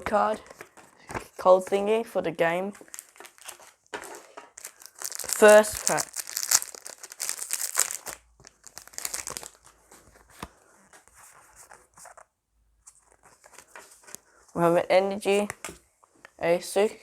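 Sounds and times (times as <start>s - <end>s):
foil wrapper crackling: 2.8s - 9.8s
wrapper rustling and clicks: 2.8s - 12.3s.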